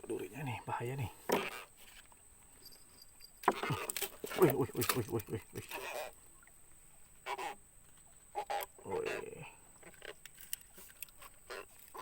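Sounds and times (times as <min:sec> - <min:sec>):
catfish croaking grunts: 0:03.4 - 0:06.2, 0:08.4 - 0:10.2.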